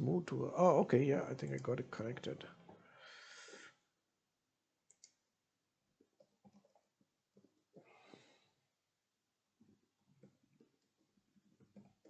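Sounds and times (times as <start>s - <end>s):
soft breath: 2.8s - 3.9s, 7.8s - 8.7s
faint clicks and ticks: 4.8s - 5.3s, 6.0s - 7.6s.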